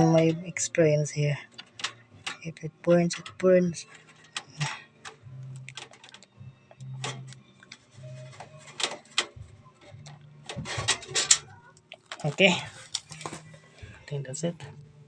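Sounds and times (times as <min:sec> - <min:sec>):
clicks of pc parts handled: 0:04.0 - 0:06.3, 0:07.0 - 0:09.4.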